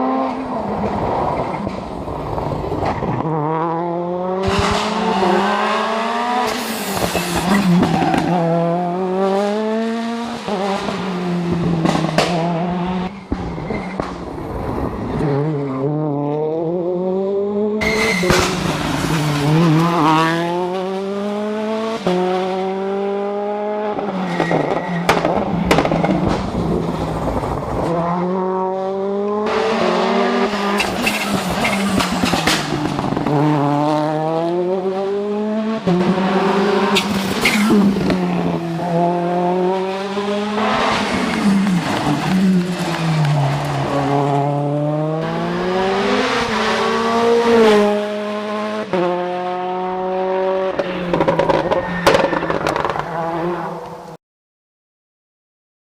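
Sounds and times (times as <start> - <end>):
rally car engine revving hard: 3.1 - 13.1, 15.1 - 53.8.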